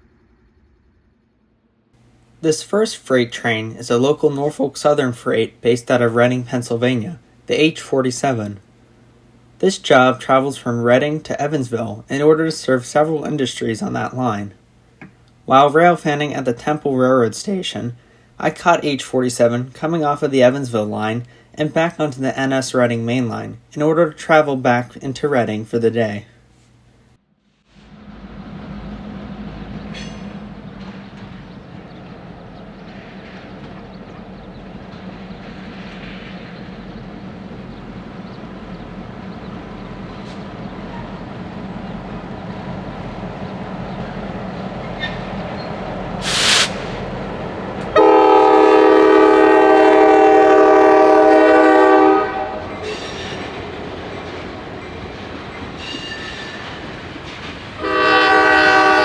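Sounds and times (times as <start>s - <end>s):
diesel locomotive rumble: 27.7s - 59.0s
train air horn chord: 46.2s - 47.1s, 47.9s - 53.0s, 57.8s - 59.0s
sharp burst of noise: 46.2s - 47.2s.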